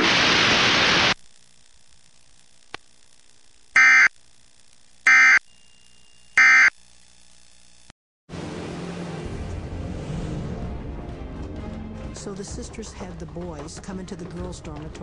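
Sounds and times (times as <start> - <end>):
click: 2.7 - 2.9
digital data tone bursts: 3.8 - 4.1, 5.1 - 6.8.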